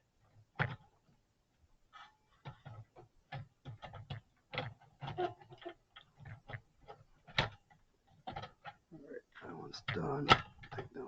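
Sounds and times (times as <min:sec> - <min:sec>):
plastic and metal clicks and knocks: 0:00.2 - 0:01.0, 0:02.3 - 0:08.9, 0:09.8 - 0:11.0.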